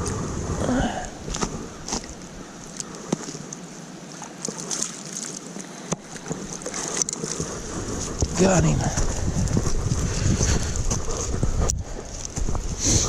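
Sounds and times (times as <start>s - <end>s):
wind rumble on microphone: 0.0s - 2.6s, 7.3s - 13.0s
water splashing and sloshing: 0.0s - 13.0s.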